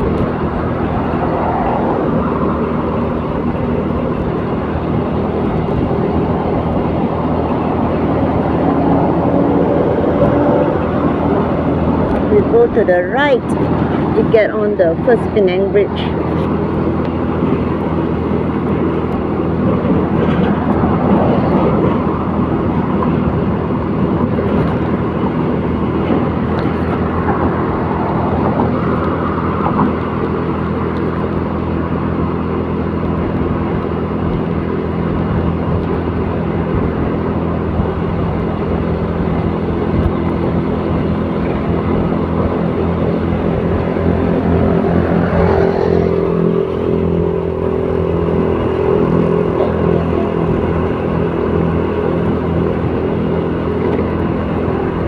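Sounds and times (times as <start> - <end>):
road noise: 0.0 - 55.0
vehicle engine hum: 0.0 - 55.0.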